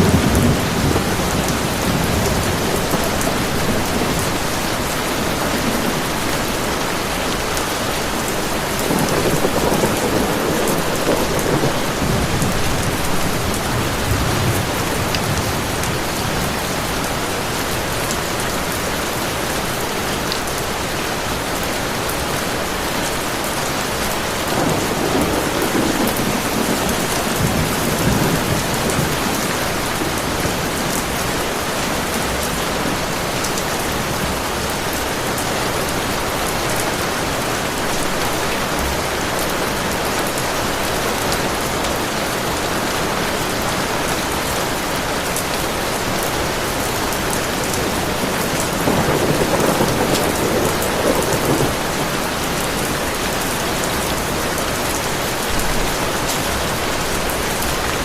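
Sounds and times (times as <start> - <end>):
low thunder rumbling: 0.0 - 17.5, 24.2 - 38.2, 46.3 - 54.9
heavy rain falling: 0.0 - 58.0.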